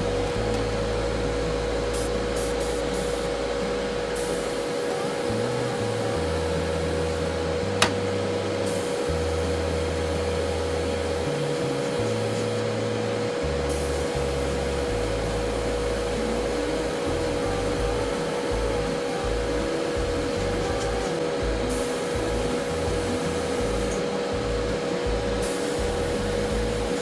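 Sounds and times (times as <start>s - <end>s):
background music with low bass line: 0.0s - 27.0s
steady hiss: 0.0s - 27.0s
sharp click: 7.8s - 8.0s.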